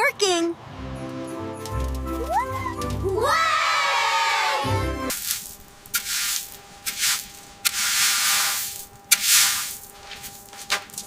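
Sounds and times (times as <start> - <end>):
short scraping hissing strokes: 5.1 - 10.8
faint steady hum: 5.1 - 11.0.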